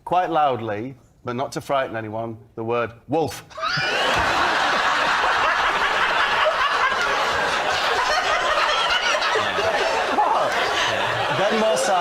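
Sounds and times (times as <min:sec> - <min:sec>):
studio audience laughing: 0:03.6 - 0:12.0.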